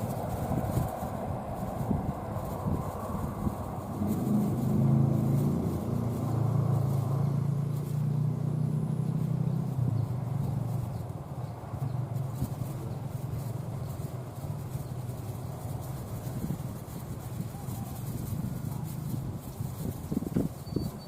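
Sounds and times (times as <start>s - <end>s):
engine humming: 0.0s - 21.0s
wind rumble on microphone: 0.0s - 21.0s.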